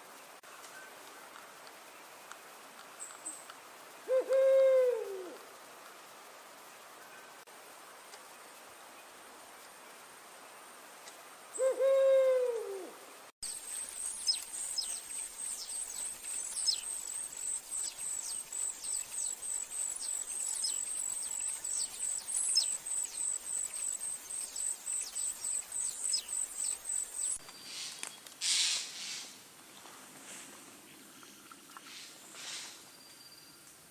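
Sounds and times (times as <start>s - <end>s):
owl hooting: 4.1s - 5.4s, 11.6s - 13.0s.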